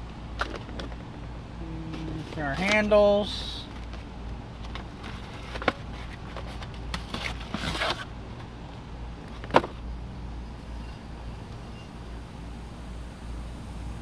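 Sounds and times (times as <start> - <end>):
scraping and rustling packaging: 3.7 - 8.1.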